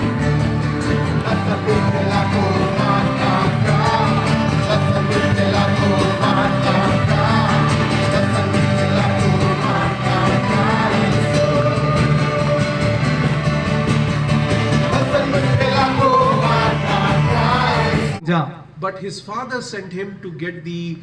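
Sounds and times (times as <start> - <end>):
instrumental backing music: 0.0 - 18.2
person singing: 0.9 - 13.6, 14.8 - 18.2.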